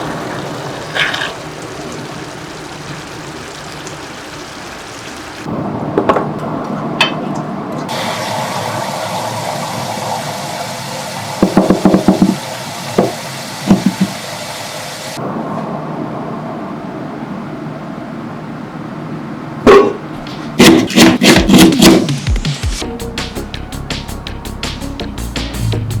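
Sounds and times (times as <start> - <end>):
sauce sizzling in a pan: 0.0 - 5.5.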